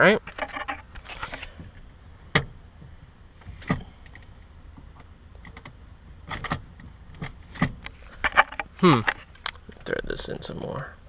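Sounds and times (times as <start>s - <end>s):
handbrake lever clicks: 5.0s - 7.9s.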